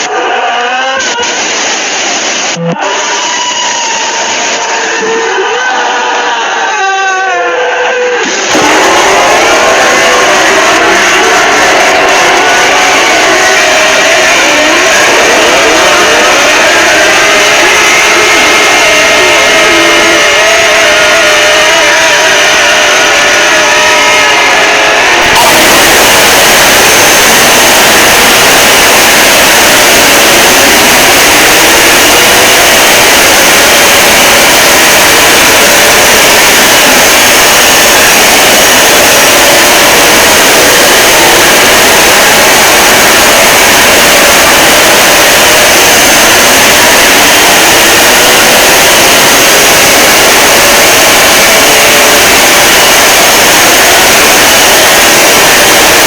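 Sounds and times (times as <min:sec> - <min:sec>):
distorted alarm noise: 0:00.0 - 0:06.5, 0:08.1 - 0:56.0.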